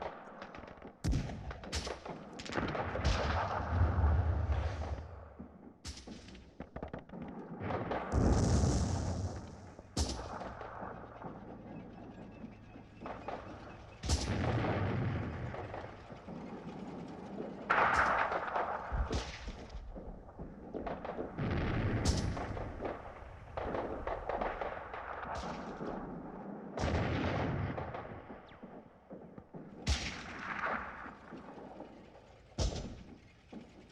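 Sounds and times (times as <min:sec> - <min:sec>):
loud gunshots with rumble: 0:07.5 - 0:33.9.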